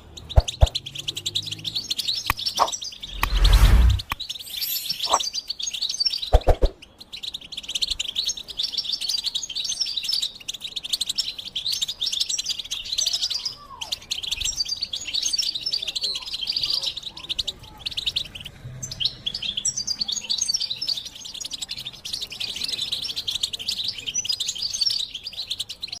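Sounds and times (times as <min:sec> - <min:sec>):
goldfinch singing: 0:00.0 - 0:03.2, 0:04.2 - 0:06.2.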